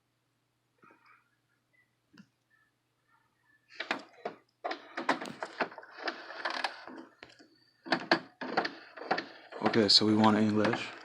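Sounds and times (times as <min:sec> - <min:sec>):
printer mechanism clicking and rattling: 0:03.8 - 0:07.1, 0:07.9 - 0:11.0.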